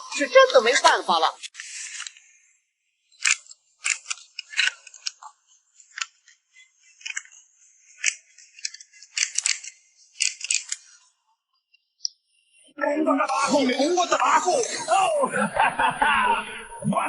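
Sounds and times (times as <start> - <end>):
toy pistol clicks and clacks: 3.1 - 5.2, 7.0 - 10.9.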